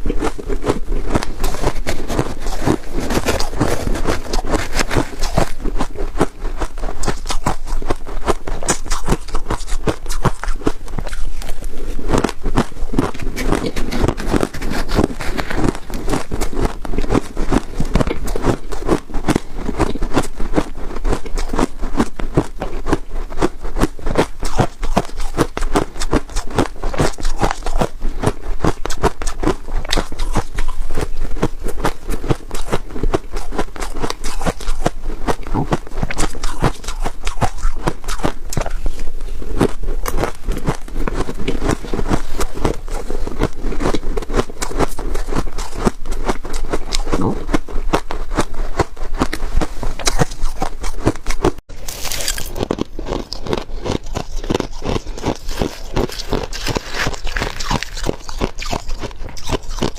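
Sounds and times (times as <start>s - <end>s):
frost being crunched: 51.7s - 59.6s.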